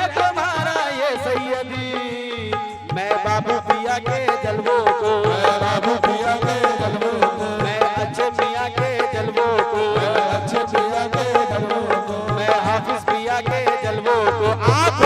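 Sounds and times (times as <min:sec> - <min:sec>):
hand drums: 0:01.6 - 0:15.0.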